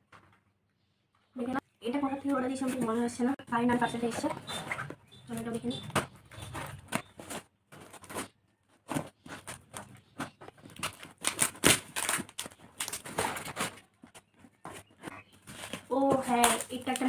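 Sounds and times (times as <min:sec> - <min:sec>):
packaging tearing and crinkling: 0:05.8 - 0:14.2, 0:15.4 - 0:17.0.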